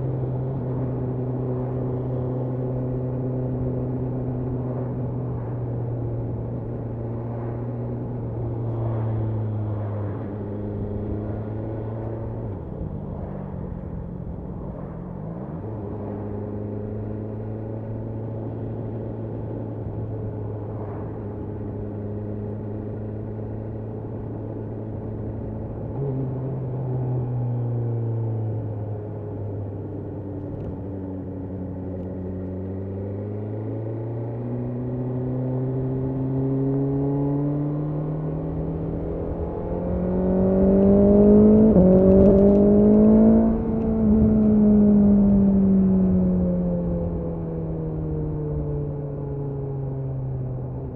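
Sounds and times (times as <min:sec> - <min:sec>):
motorcycle engine revving: 0:34.6 - 0:47.2.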